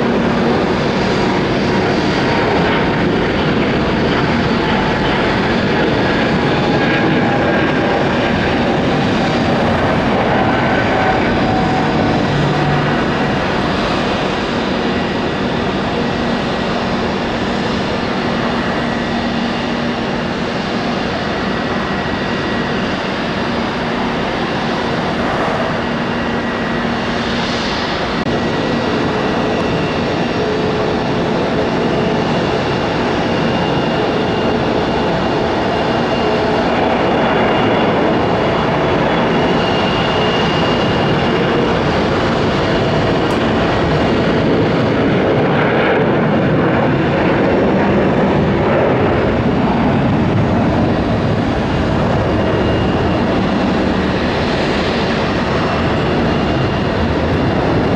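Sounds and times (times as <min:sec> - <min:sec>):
jet engines taking off: 0:00.0 - 0:57.9.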